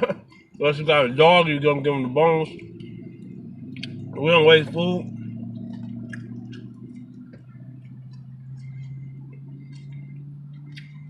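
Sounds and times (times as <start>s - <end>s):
steady low hum: 2.0s - 11.0s.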